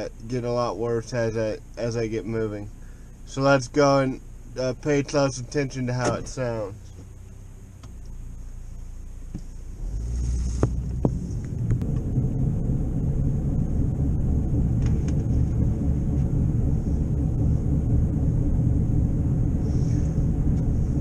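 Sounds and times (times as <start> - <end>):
car engine low rumble: 0.0 - 21.0
wheel bearing drone: 5.5 - 21.0.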